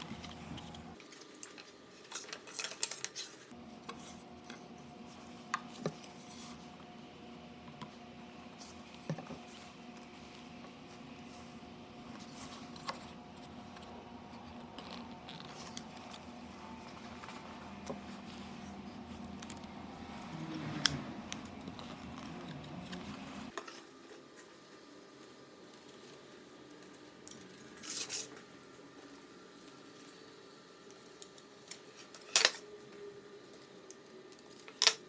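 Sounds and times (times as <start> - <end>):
steady low hum: 3.5 - 23.6.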